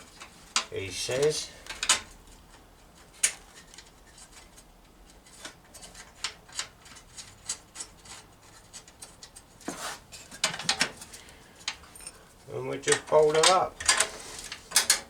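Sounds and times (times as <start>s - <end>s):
metallic clicks and scrapes: 1.6s - 12.3s.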